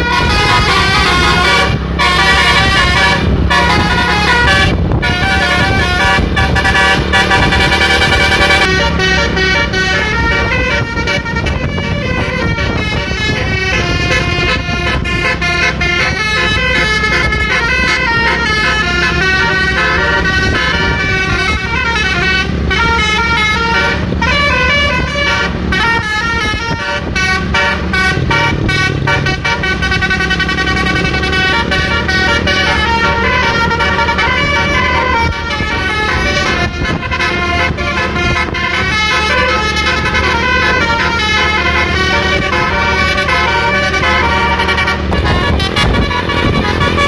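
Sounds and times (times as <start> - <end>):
deep bass: 0.0 - 47.0
multi-tone bus horn melody: 0.0 - 47.0.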